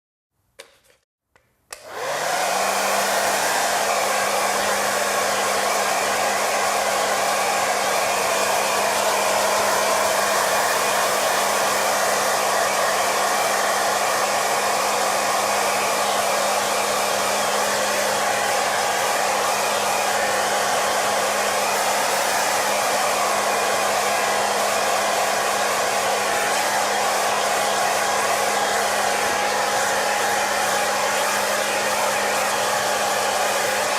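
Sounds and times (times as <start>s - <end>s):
hair dryer switch clicks: 1.4s - 2.4s
air rushing from hair dryer: 1.7s - 33.9s
hair dryer motor hum: 1.7s - 33.9s.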